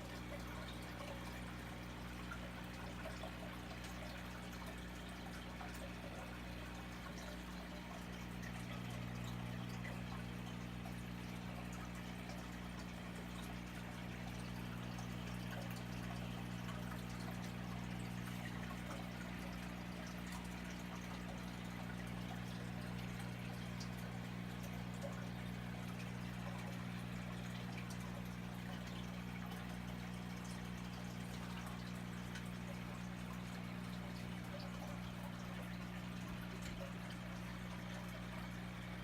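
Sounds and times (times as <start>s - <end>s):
aquarium filter water trickling: 0.0s - 39.0s
drips and bubbles: 0.0s - 39.0s.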